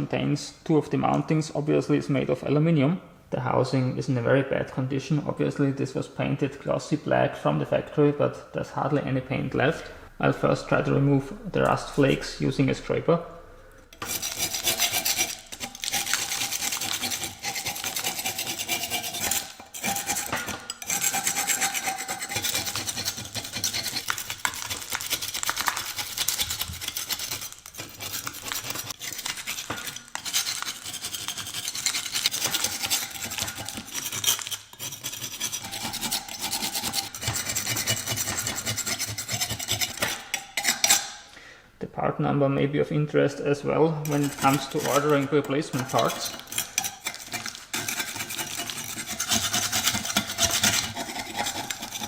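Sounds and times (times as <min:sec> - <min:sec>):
scraper scraping rusty metal: 0:13.9 - 0:41.2, 0:44.0 - 0:52.0.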